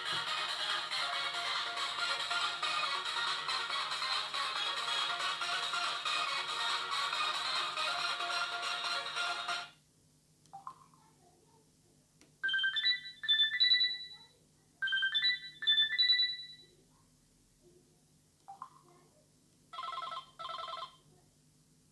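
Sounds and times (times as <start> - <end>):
high beeping ringtone melody: 0.0 - 9.7, 12.5 - 14.2, 14.8 - 16.6
phone music ringtone: 0.0 - 9.7, 14.8 - 16.6
short phone beep: 12.5 - 16.7.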